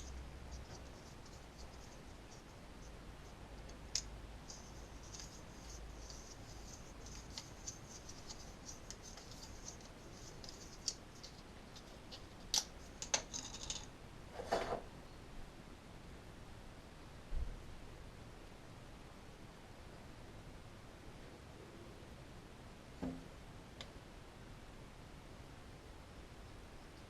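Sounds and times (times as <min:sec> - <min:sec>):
metal parts clicking and knocking: 0:12.5 - 0:13.9.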